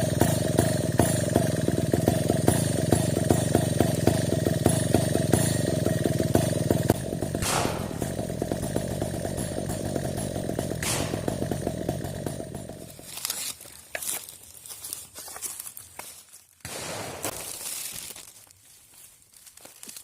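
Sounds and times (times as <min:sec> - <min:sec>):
chainsaw running: 0:00.0 - 0:14.2
rustling and crackling: 0:12.9 - 0:20.0.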